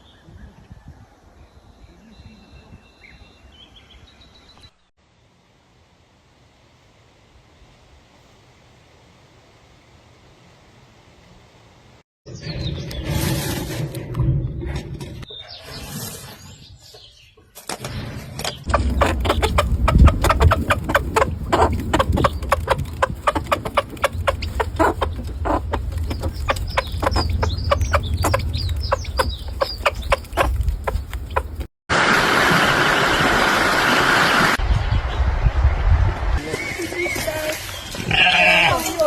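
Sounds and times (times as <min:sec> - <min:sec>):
chickens clucking: 0:18.7 - 0:31.7
low rumble: 0:18.7 - 0:31.7.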